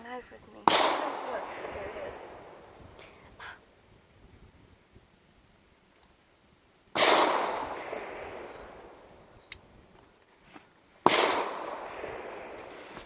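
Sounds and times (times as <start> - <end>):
gunshots with long echo: 0.6 - 3.7, 6.9 - 9.8, 11.0 - 13.0.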